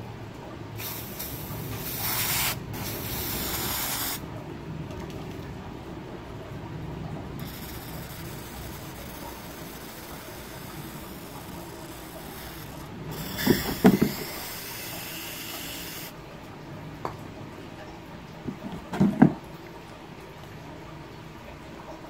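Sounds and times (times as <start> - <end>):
aerosol spray hissing: 0.8 - 4.2, 12.5 - 16.1.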